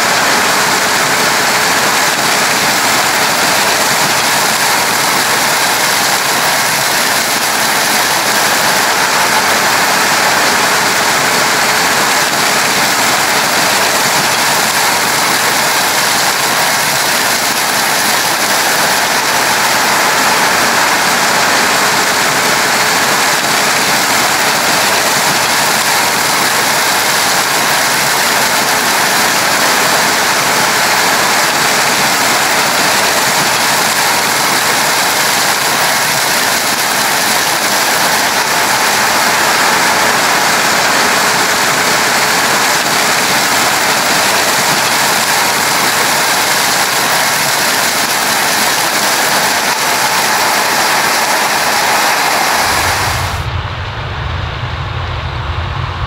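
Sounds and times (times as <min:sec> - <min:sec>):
combine harvester rushing noise: 0:00.0 - 0:56.0
low engine hum: 0:51.3 - 0:56.0.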